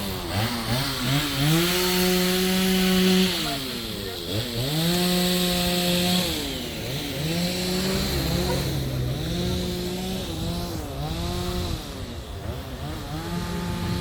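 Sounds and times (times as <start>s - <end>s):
chainsaw cutting wood: 0.0s - 14.0s.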